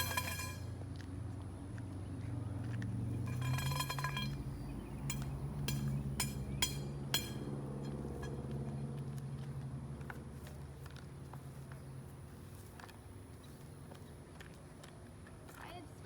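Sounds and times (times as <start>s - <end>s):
hard objects clinking: 0.0s - 0.7s, 3.2s - 8.4s
steady low hum: 0.0s - 0.8s, 2.1s - 9.2s.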